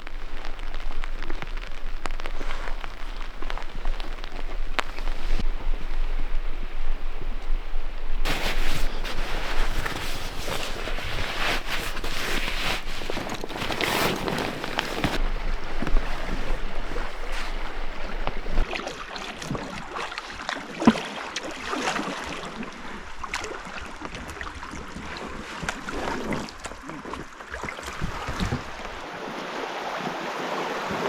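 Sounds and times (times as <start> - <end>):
water rushing and splashing: 0.0 - 7.4, 8.1 - 31.0
wind noise on microphone: 0.0 - 18.7, 27.8 - 29.1.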